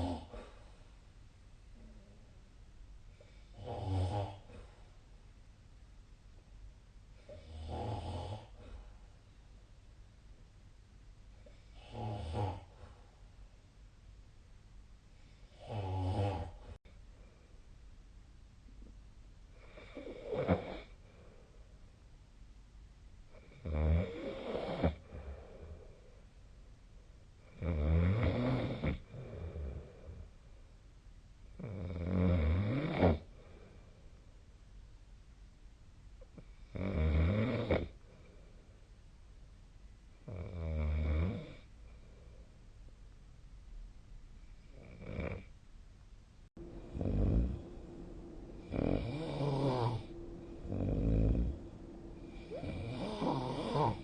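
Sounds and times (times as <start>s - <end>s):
person snoring: 15.5s - 16.8s, 46.6s - 54.0s.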